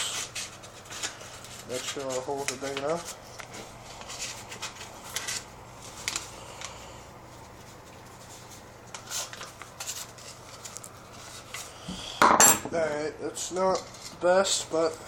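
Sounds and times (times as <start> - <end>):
paper rustling and crinkling: 0.0 - 11.7, 13.5 - 15.0.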